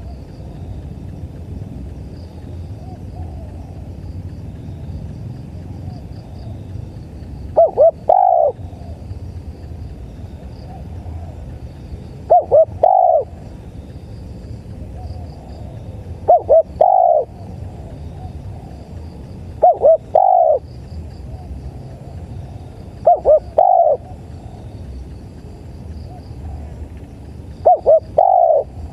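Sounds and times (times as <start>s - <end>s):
faint crickets chirping: 0.0s - 28.9s
dove cooing: 2.3s - 4.0s, 7.5s - 9.5s, 10.3s - 13.7s, 14.7s - 24.7s, 26.0s - 28.9s.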